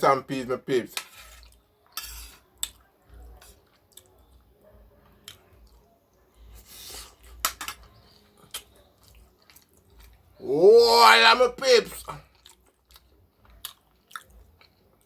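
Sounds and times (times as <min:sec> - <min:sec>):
cutlery clicking on plate: 0:01.0 - 0:02.8, 0:07.4 - 0:07.9
person chewing: 0:03.4 - 0:04.4, 0:05.2 - 0:05.9, 0:06.5 - 0:10.3, 0:12.0 - 0:15.0.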